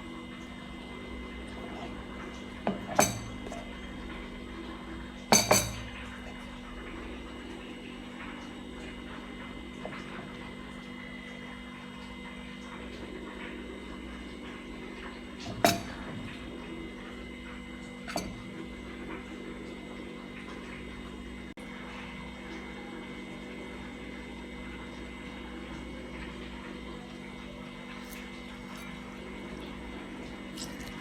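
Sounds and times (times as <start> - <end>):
kitchenware clinks: 2.7 - 3.6, 5.3 - 6.0.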